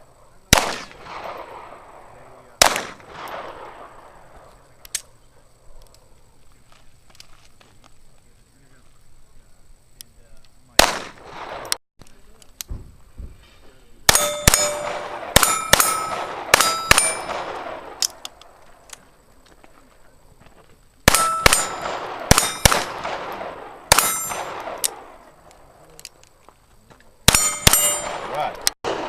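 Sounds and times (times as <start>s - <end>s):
pistol shots: 0.5s - 5.1s, 10.8s - 11.8s, 14.1s - 19.0s, 21.0s - 26.2s, 27.2s - 29.0s
steel targets clanging: 13.4s - 17.6s, 21.1s - 24.9s, 27.3s - 28.5s.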